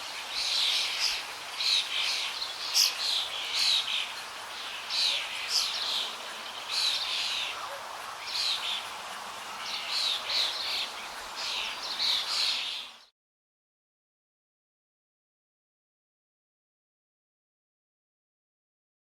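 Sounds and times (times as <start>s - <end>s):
birds chirping: 0.0s - 13.1s.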